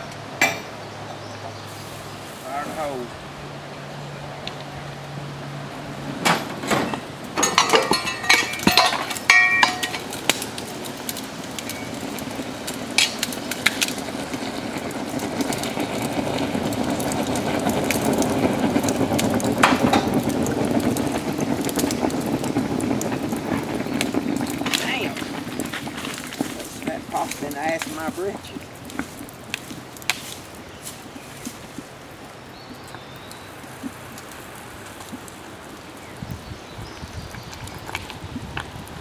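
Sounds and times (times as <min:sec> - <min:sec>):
steady rushing noise: 0:01.6 - 0:32.6
metal tools clinking and ringing: 0:07.4 - 0:10.1.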